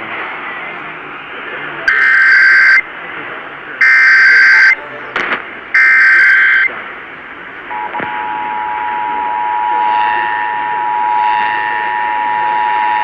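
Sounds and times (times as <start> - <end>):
radio static hiss: 0.0 - 13.0
screeching digital data bursts: 1.9 - 2.8, 5.8 - 6.7
two-tone alert signal: 1.9 - 2.8
static crackle: 4.3 - 6.9.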